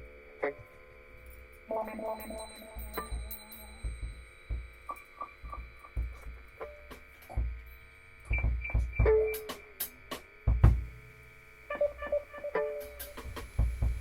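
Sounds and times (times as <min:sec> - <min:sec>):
low bass thumps: 0:08.3 - 0:09.3, 0:10.5 - 0:11.0.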